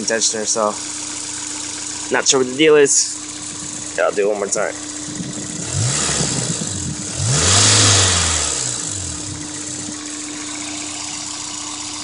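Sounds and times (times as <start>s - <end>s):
car engine revving then idling: 3.2s - 12.0s.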